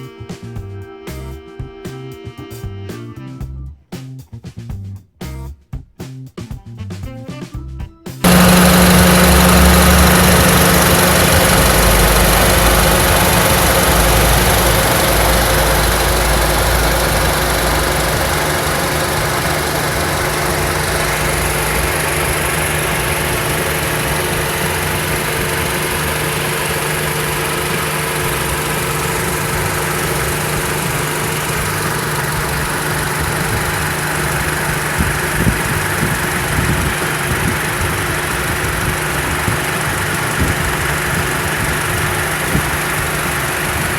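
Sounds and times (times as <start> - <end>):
car engine idling: 8.2 - 43.9.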